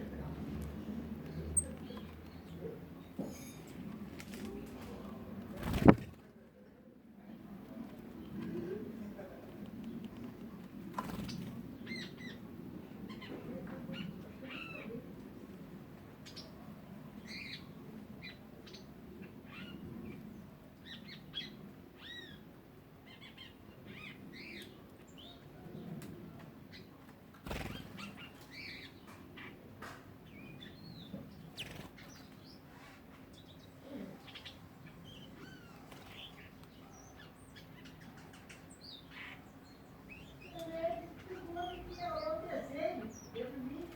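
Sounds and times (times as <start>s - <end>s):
small birds chirping: 0.0s - 43.9s.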